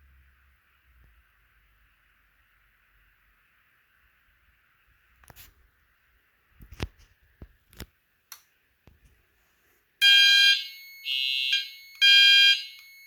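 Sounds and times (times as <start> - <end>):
pulsing electronic alarm horns: 10.0 - 13.0
quieter alarm tone: 10.0 - 13.0.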